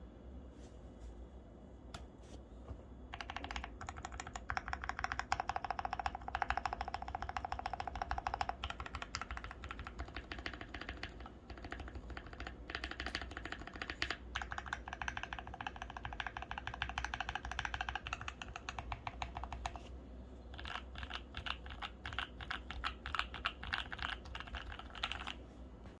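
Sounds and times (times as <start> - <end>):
mechanical keyboard typing: 3.1 - 19.9, 20.5 - 25.4.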